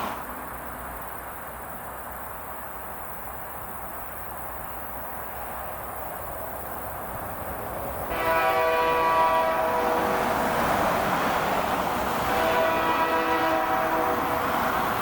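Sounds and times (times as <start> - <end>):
faint outdoor background noise: 0.0 - 15.0
locomotive air horn chord: 8.1 - 10.4, 12.2 - 14.6.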